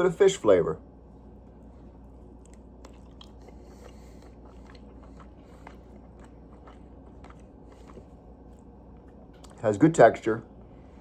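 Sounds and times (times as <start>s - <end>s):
low steady hum: 0.0s - 11.0s
person chewing: 1.4s - 9.6s.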